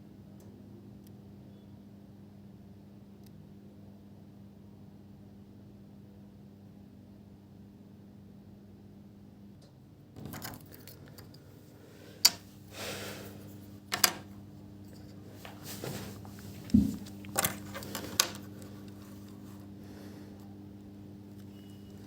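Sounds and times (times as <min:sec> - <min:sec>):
faint low hum: 0:10.2 - 0:22.0
sharp clicks of small parts: 0:12.2 - 0:12.4, 0:13.9 - 0:14.2
soft rustling: 0:14.9 - 0:20.2.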